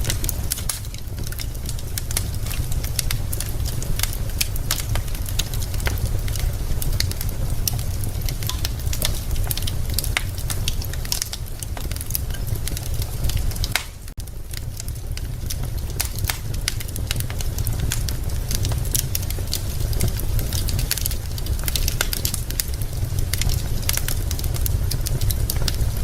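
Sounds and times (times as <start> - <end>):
low fire rumble: 0.0 - 26.0
wood fire crackling and popping: 0.0 - 26.0.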